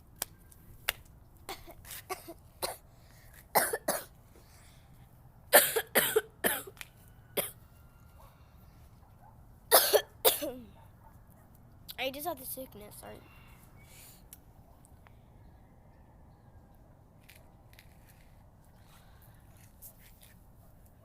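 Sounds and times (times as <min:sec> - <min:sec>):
girl coughing: 0:01.5 - 0:02.8, 0:03.5 - 0:04.1, 0:05.5 - 0:06.8, 0:09.7 - 0:10.7.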